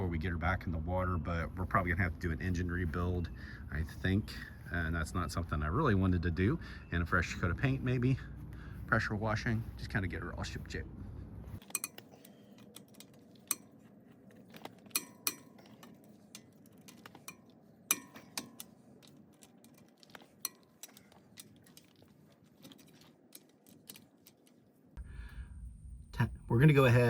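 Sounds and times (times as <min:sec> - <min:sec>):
metal tools clinking: 0:11.6 - 0:24.9.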